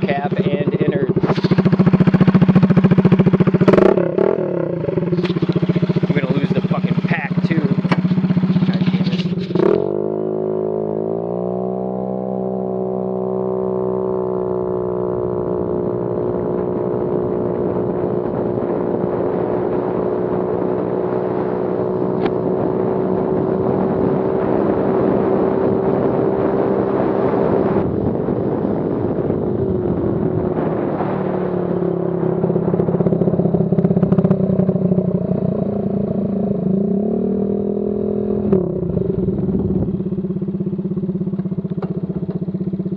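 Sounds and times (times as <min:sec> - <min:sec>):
raspy scooter engine: 0:00.0 - 0:09.9.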